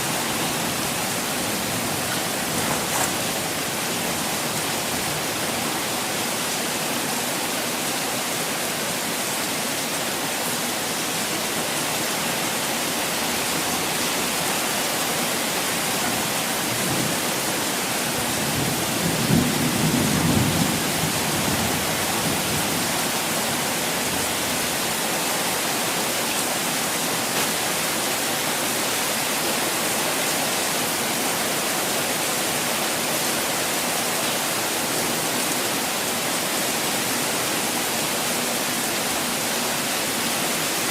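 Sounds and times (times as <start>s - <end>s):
hiss of falling water: 22.0s - 40.9s.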